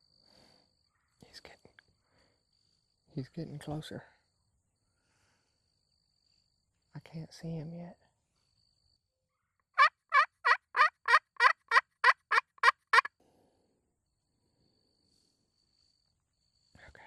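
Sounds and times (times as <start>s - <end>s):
turkey call yelps: 9.8s - 13.1s.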